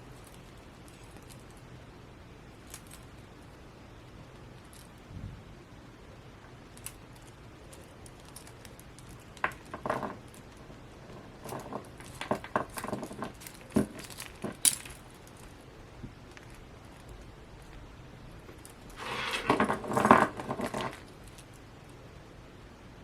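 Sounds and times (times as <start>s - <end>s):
toy packaging clicks and rustles: 0.1s - 1.6s, 2.6s - 3.3s, 6.8s - 10.7s, 11.3s - 17.8s, 18.4s - 21.6s.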